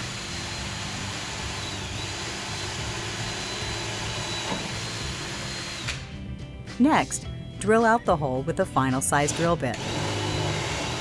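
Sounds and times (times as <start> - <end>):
power drill whining: 0.0 - 6.1, 9.3 - 11.0.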